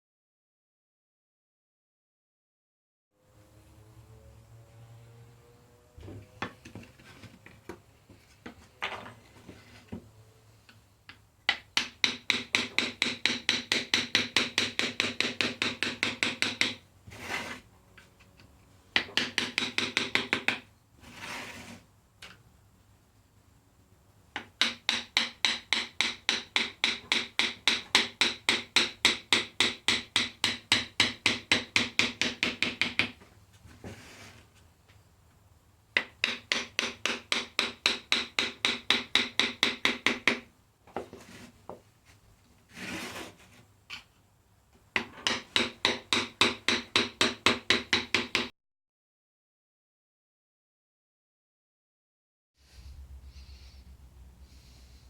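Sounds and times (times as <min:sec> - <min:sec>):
hand tool rasping on wood: 0:12.1 - 0:17.7, 0:19.0 - 0:21.8.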